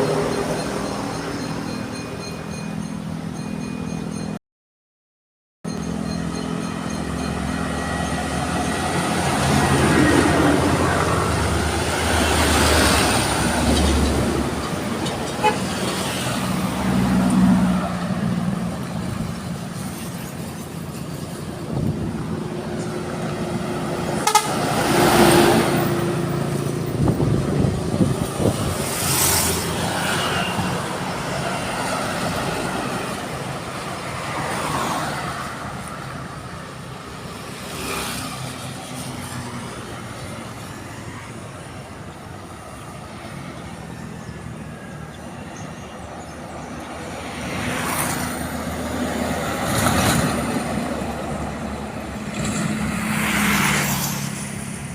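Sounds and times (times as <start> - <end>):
trucks driving past: 0.0 - 4.4, 5.7 - 54.9
multi-tone truck horn: 15.4 - 15.8, 24.0 - 25.7.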